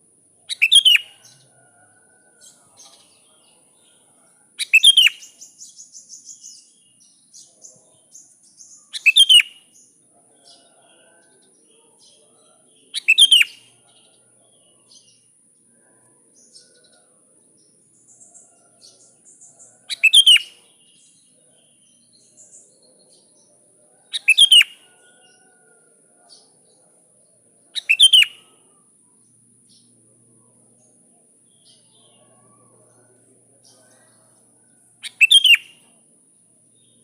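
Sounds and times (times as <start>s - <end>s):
faint bird chirps: 0.0s - 37.0s
bird song bursts: 0.5s - 1.6s, 4.6s - 10.7s, 12.0s - 15.3s, 17.6s - 23.3s, 24.0s - 25.5s, 27.8s - 28.6s, 34.7s - 36.0s.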